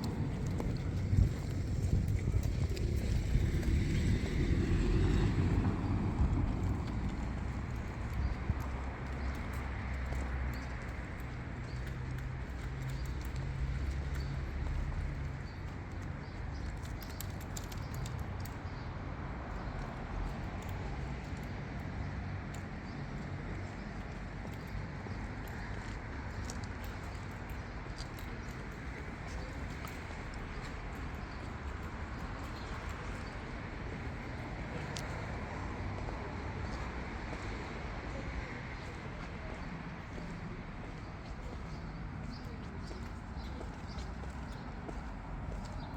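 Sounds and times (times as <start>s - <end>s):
street rumble and hiss: 0.0s - 45.9s
light clicks: 15.9s - 18.6s.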